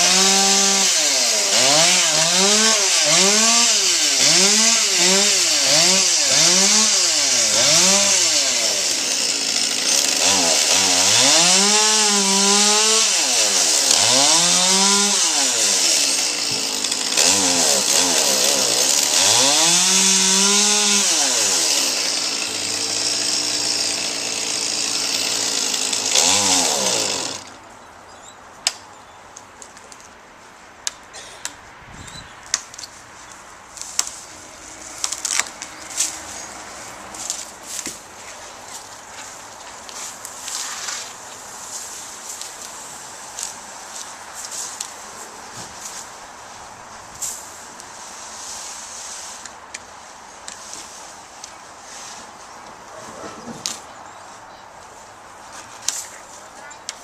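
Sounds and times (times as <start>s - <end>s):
chainsaw revving while cutting wood: 0.0s - 27.5s.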